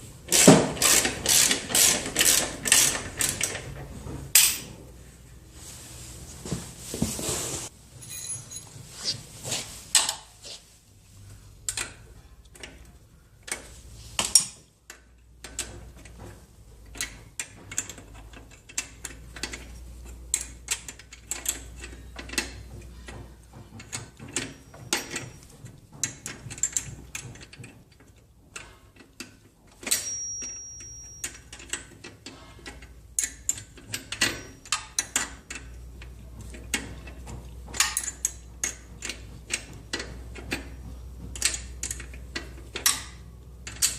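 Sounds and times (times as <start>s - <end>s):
metal tools clicking and clinking: 4.4s - 4.7s, 8.0s - 8.8s, 23.8s - 40.8s
brief high steady tone: 8.0s - 8.7s.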